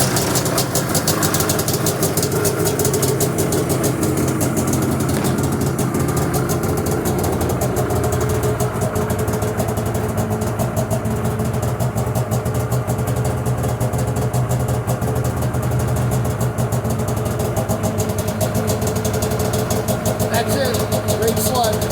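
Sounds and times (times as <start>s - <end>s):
snowmobile engine idling: 0.0s - 21.9s.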